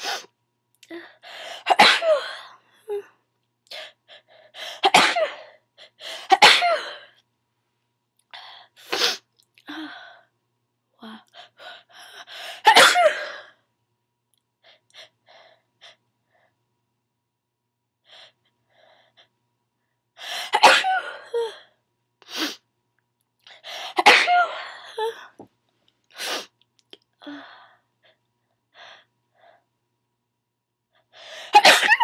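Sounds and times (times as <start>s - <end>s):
person sneezing: 31.6s - 32.0s.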